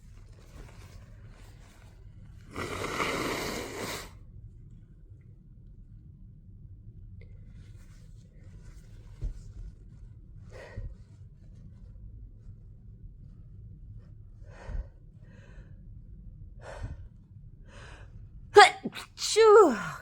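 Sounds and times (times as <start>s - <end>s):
person gasping breaths: 14.4s - 15.8s, 16.6s - 18.2s
person sneezing: 18.6s - 20.0s.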